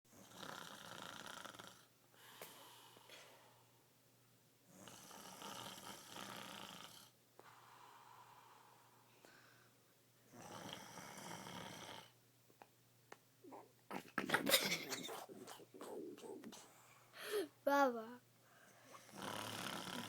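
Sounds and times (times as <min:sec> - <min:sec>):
man snoring: 0:00.2 - 0:01.9, 0:04.7 - 0:07.1, 0:10.4 - 0:12.1, 0:19.0 - 0:20.0
quiet breathing: 0:02.1 - 0:03.9, 0:07.4 - 0:10.0, 0:15.0 - 0:17.8, 0:18.4 - 0:20.0.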